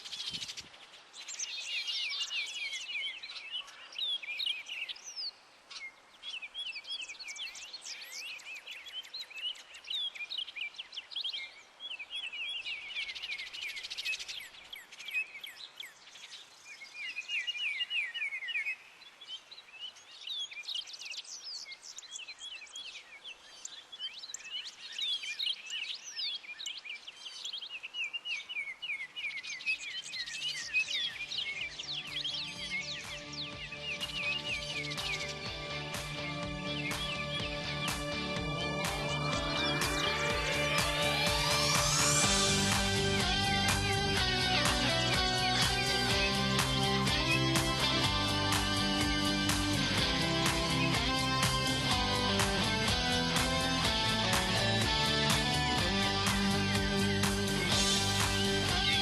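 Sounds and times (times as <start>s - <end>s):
songbirds chirping and singing: 0.0s - 59.0s
rain hissing: 34.6s - 59.0s.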